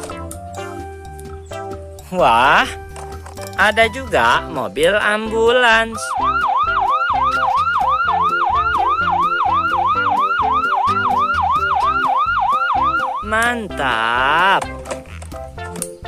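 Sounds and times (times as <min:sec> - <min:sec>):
background music: 0:00.0 - 0:16.0
ambulance siren wailing: 0:06.0 - 0:14.6.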